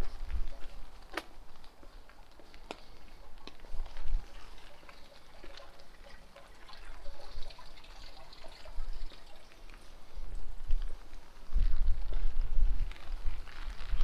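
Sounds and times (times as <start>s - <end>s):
rain dripping and trickling: 2.2s - 14.0s
wind gusts on microphone: 10.3s - 14.0s.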